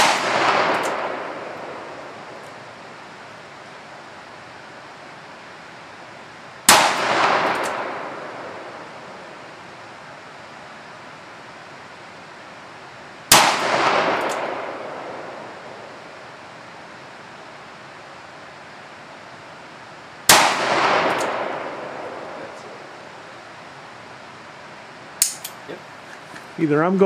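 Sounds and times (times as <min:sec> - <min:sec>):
faint echo of gunshot: 0:00.0 - 0:02.4, 0:06.7 - 0:09.2, 0:13.3 - 0:15.9, 0:20.3 - 0:22.9.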